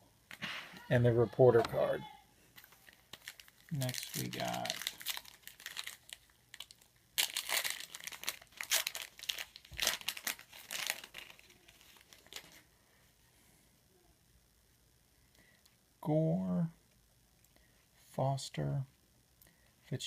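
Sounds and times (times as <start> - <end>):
wrapper tearing and crinkling: 2.6 - 12.6.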